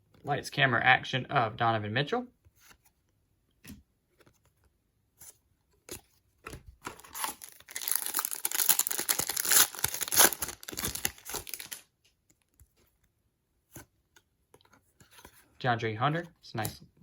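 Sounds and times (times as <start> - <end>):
wrapper crinkling and tearing: 6.8 - 11.8.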